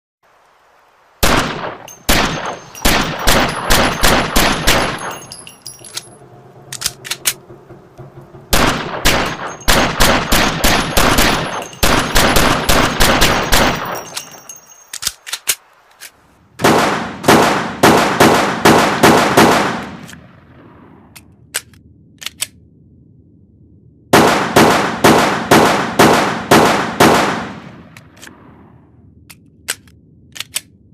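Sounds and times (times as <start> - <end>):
pistol shots with ringing tail: 1.2 - 6.1, 8.5 - 14.7, 16.6 - 20.0, 24.2 - 27.9.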